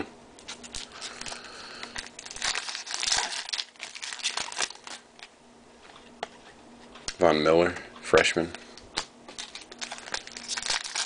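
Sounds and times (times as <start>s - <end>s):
foil wrapper crinkling: 0.4s - 5.3s, 8.9s - 11.0s
cards being handled: 8.0s - 11.0s.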